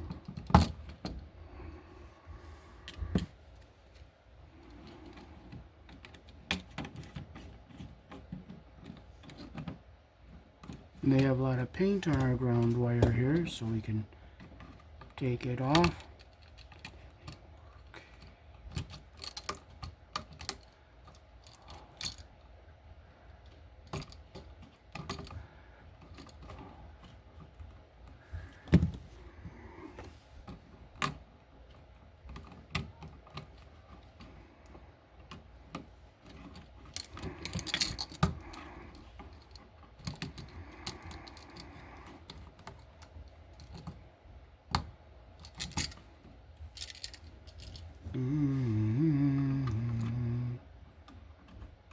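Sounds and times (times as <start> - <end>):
hand tool clicking on wire: 34.6 - 44.0.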